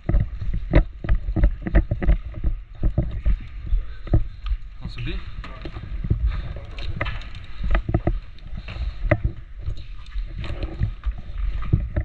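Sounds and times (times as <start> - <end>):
gear knocking and clicking: 0.0 - 4.7
footsteps: 0.0 - 12.0
microphone handling noise: 0.0 - 12.0
wind rumble on microphone: 0.0 - 12.0.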